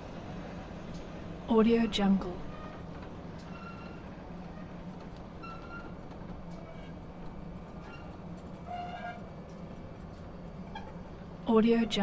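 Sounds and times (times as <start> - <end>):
faint train clicks: 0.0 - 12.0
freight train rumbling: 0.0 - 12.0
high wheel squeals: 3.4 - 4.2, 5.4 - 6.0, 7.8 - 9.3.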